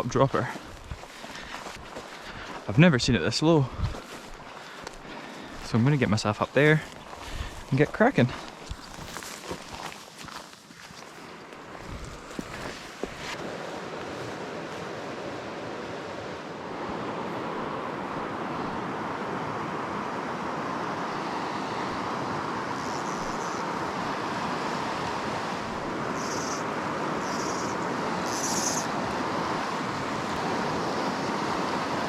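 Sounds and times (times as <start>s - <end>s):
river water running over stones: 3.4s - 14.8s
high-pitched buzzes: 26.2s - 26.6s.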